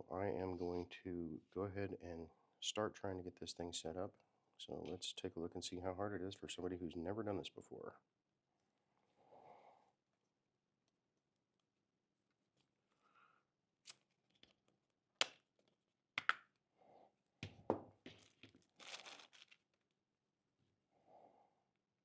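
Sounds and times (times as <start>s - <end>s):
plastic tearing and crinkling: 18.2s - 19.7s.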